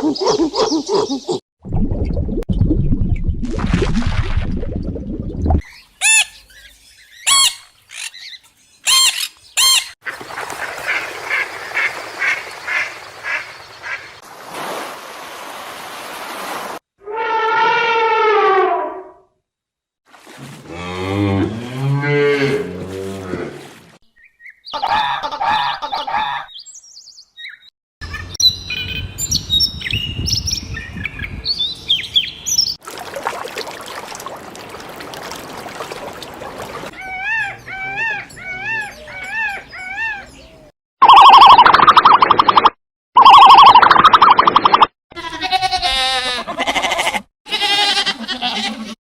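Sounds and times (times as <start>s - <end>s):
falling animal call: 17.0s - 19.1s
bird chirps: 25.9s - 32.8s.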